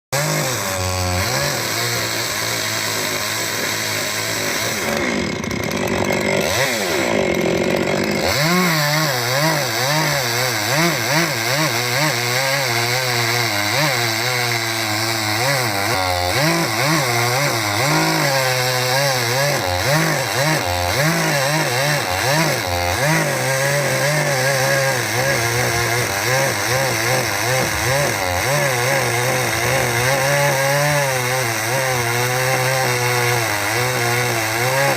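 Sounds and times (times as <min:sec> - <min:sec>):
chainsaw cutting wood: 0:00.1 - 0:34.9.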